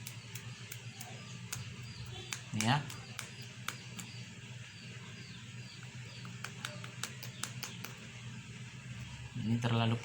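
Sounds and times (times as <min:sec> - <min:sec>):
sharp light clicks: 0:00.0 - 0:04.2
chicks peeping: 0:00.1 - 0:08.0.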